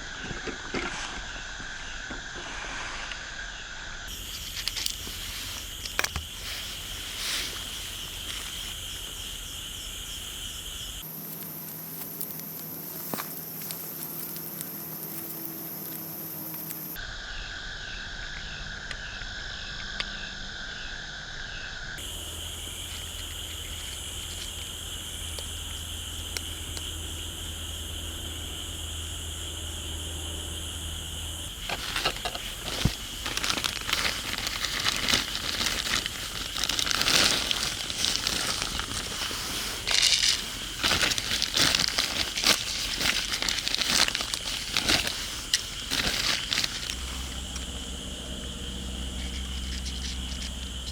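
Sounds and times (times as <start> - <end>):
background hum: 0.0 - 50.9
cat crunching dry food: 31.6 - 47.6.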